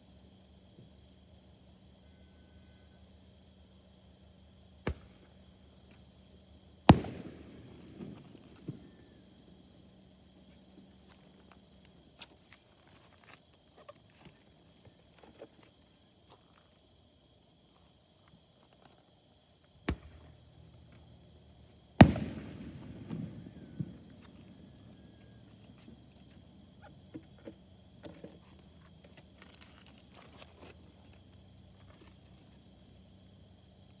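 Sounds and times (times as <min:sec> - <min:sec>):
insects chirring: 0:00.0 - 0:34.0
firework pops and crackles: 0:04.9 - 0:05.4, 0:06.9 - 0:09.2, 0:19.8 - 0:20.4, 0:22.0 - 0:24.9
fireworks bangs: 0:06.9 - 0:09.3, 0:22.0 - 0:25.9.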